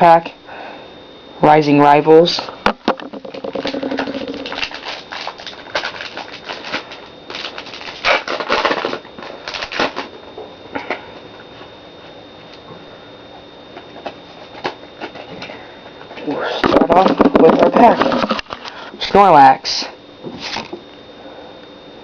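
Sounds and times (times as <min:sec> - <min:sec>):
foil pack tearing and crinkling: 0:03.5 - 0:10.2.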